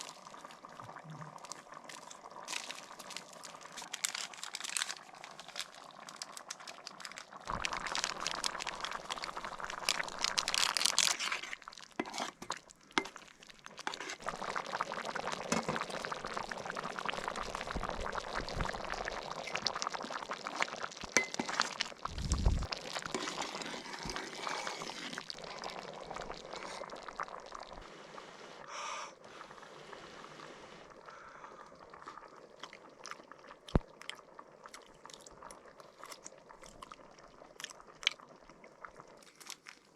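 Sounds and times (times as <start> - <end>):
liquid being poured: 0.0 - 27.9
food rustling and crunching: 1.4 - 14.3, 19.4 - 25.4, 39.1 - 39.9.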